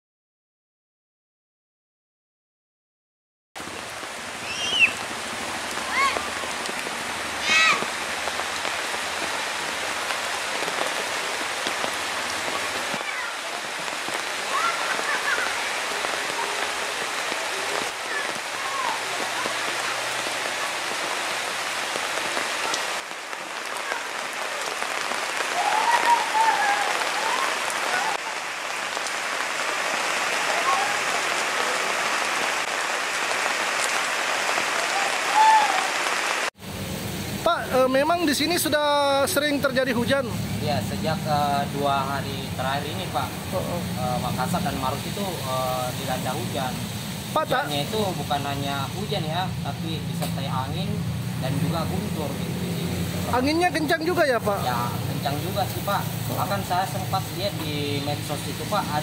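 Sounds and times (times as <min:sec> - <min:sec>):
heavy rain pouring: 0:03.6 - 0:59.0
voices calling out: 0:04.4 - 0:08.1, 0:10.3 - 0:28.7, 0:30.2 - 0:32.2
high-pitched shout: 0:05.8 - 0:06.3, 0:07.4 - 0:07.9, 0:14.4 - 0:15.8, 0:25.5 - 0:28.2, 0:34.9 - 0:35.9.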